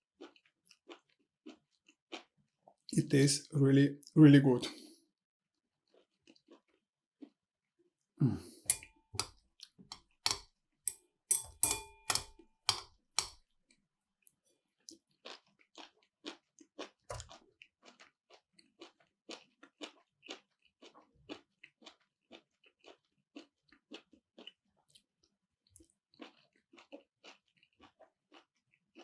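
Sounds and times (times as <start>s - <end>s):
crunchy chewing: 0.2s - 2.5s, 5.8s - 7.4s, 14.8s - 29.0s
sharp clicks with ringing tone: 11.3s - 13.4s.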